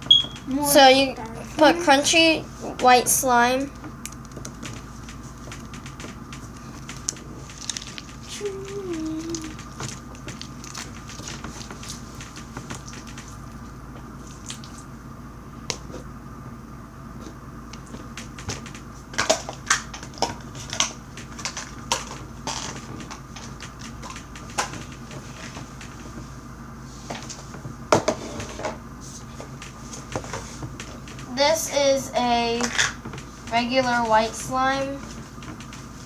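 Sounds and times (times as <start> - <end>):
crunchy slime crackling and popping: 6.3 - 13.4, 14.2 - 14.9.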